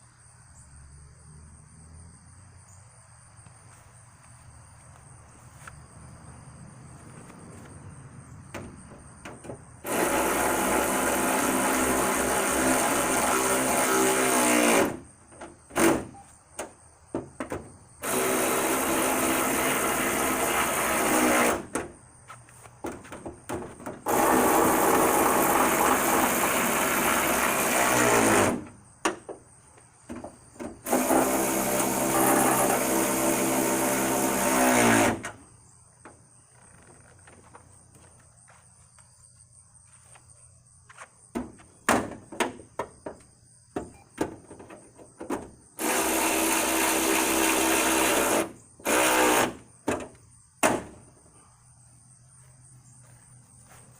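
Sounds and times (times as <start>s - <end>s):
electric drill running: 9.8s - 14.9s, 18.0s - 21.6s, 24.1s - 28.6s, 30.8s - 35.1s, 45.8s - 49.6s.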